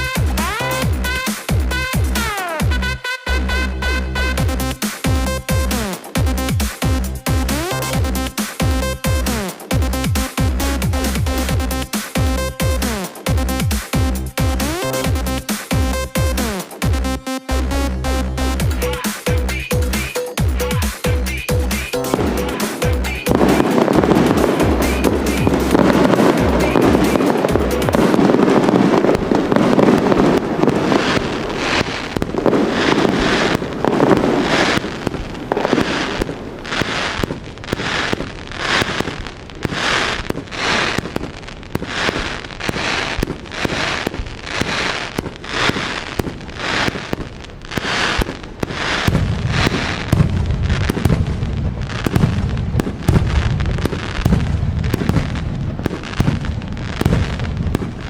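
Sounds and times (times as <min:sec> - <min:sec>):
deep fireworks booms: 0:00.0 - 0:02.8, 0:03.5 - 0:17.2, 0:18.4 - 0:58.0
fireworks sharp reports: 0:00.0 - 0:58.0.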